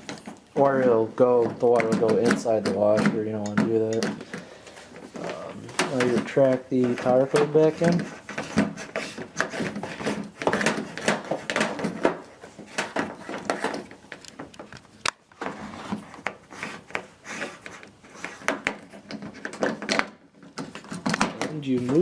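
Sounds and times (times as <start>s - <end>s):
plastic clicks and knocks: 1.3s - 4.5s, 18.3s - 22.0s.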